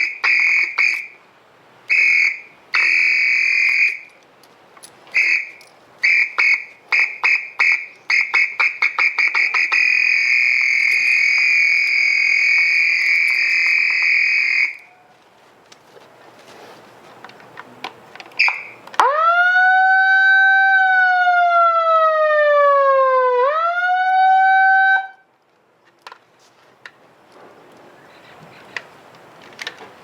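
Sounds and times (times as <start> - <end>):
high-pitched siren blasts: 5.2 - 15.1, 18.4 - 25.2.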